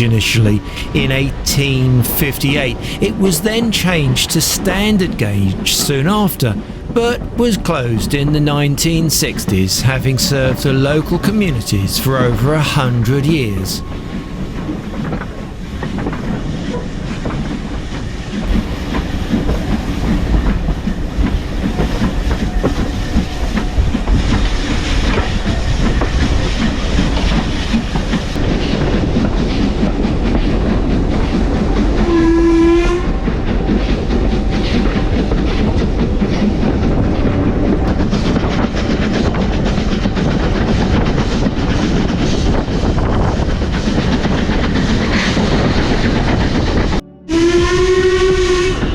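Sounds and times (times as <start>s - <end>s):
steam whistle blast: 47.3s - 48.9s.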